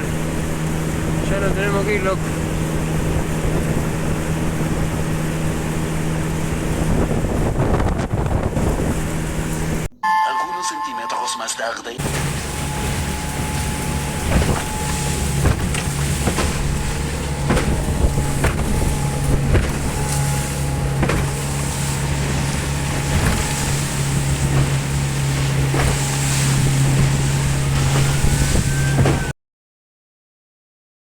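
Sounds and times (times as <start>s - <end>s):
motorboat engine drone: 0.0s - 10.2s, 12.0s - 29.3s
wind on the microphone: 2.5s - 9.9s, 25.8s - 29.3s
irregular knocks: 12.0s - 20.2s.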